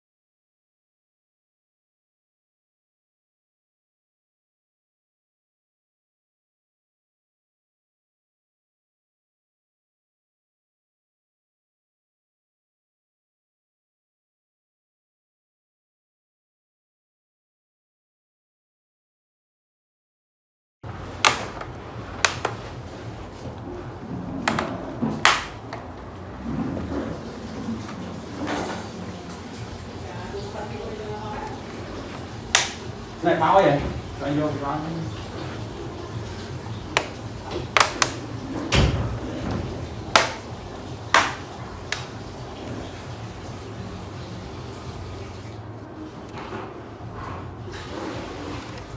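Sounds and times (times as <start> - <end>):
hard parts clicking: 21.1 - 23.8.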